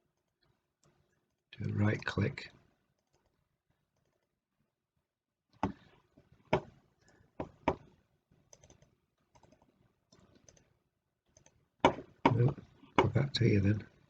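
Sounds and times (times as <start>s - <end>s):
computer mouse clicks: 8.5s - 10.7s, 11.3s - 11.6s.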